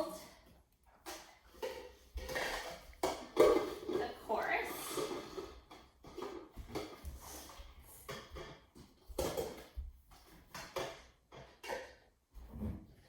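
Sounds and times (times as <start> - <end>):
plastic cups clacking: 0.0 - 12.2.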